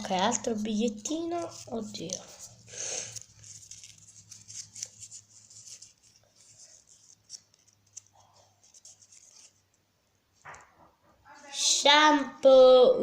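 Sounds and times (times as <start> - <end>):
paper rustling: 0.0 - 9.7.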